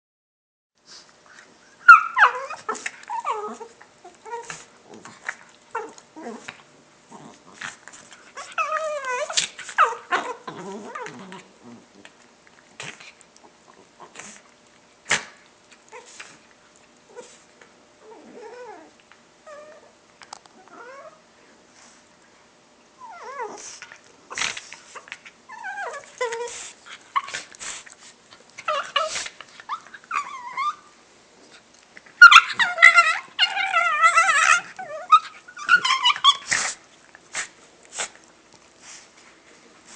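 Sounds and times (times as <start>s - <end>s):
dog whining and yipping: 1.6s - 4.7s, 8.3s - 11.4s, 18.0s - 18.9s, 19.5s - 19.9s, 20.6s - 21.2s, 23.0s - 23.7s, 24.3s - 27.5s, 28.6s - 30.9s, 32.2s - 36.8s.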